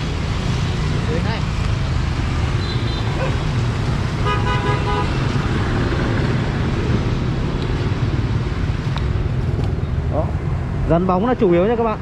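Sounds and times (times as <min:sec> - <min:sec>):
road traffic rumble: 0:00.0 - 0:12.0
vehicle horn honking: 0:04.2 - 0:05.2.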